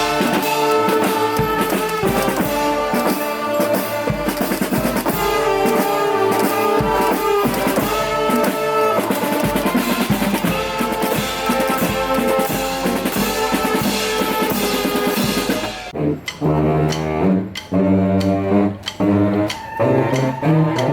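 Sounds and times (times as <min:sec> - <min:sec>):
snare and bass drum beat: 0:00.0 - 0:15.9
horns holding notes: 0:00.0 - 0:20.9.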